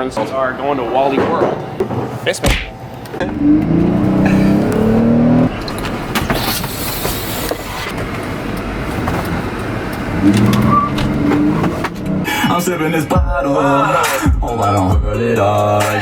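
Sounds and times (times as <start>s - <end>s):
road noise: 0.0s - 14.8s
car engine accelerating: 3.2s - 14.1s.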